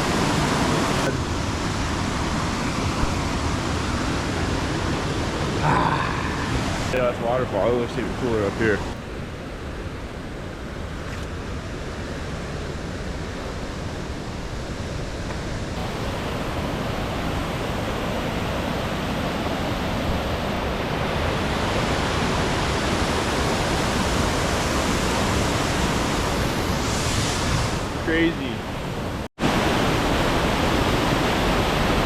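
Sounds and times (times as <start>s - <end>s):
waterfall rushing: 0.0s - 9.0s, 15.8s - 32.0s.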